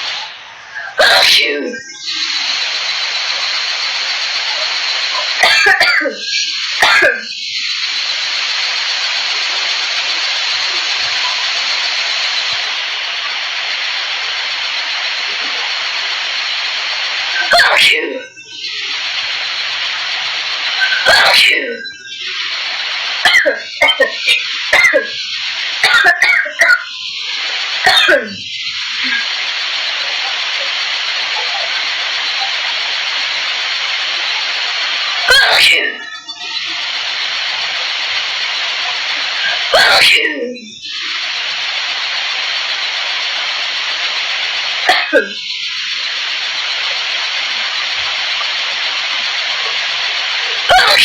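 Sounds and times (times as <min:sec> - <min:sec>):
steady loud hiss: 0:00.0 - 0:51.0
person sneezing: 0:44.9 - 0:45.4.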